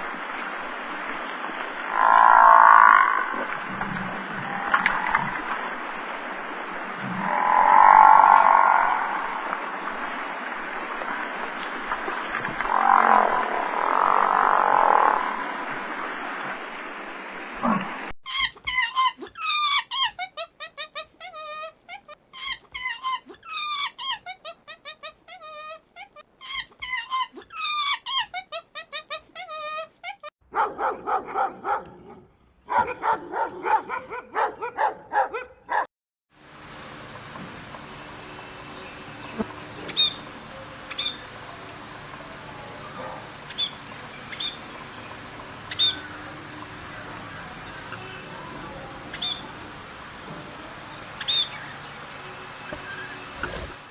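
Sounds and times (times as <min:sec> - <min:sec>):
animal calling: 0:01.9 - 0:03.5, 0:07.1 - 0:09.6, 0:12.7 - 0:15.2, 0:39.2 - 0:49.7, 0:51.2 - 0:52.0
squeaky animal chirps and trills: 0:18.3 - 0:30.3, 0:39.9 - 0:41.4, 0:43.0 - 0:44.7, 0:45.7 - 0:46.3, 0:49.1 - 0:49.5, 0:51.2 - 0:51.6
steady rough background noise: 0:36.4 - 0:53.9.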